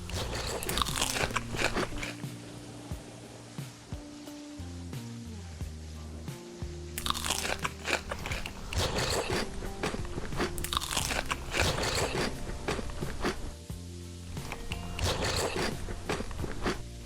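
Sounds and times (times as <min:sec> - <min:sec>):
crunching and chewing crisp food: 0:00.0 - 0:02.3, 0:07.0 - 0:13.6, 0:14.4 - 0:17.0
background music: 0:00.0 - 0:17.0.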